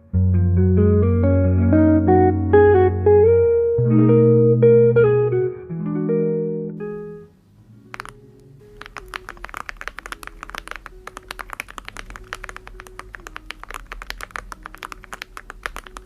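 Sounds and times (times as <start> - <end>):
fast typing on mechanical keyboard: 8.7 - 16.0.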